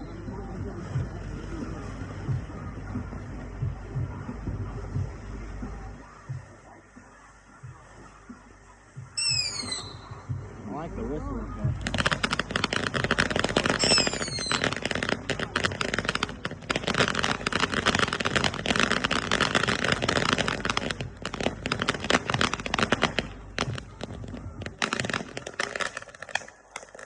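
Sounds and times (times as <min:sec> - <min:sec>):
firework fountains crackling: 0:00.0 - 0:27.0
short falling whistle: 0:09.2 - 0:10.2.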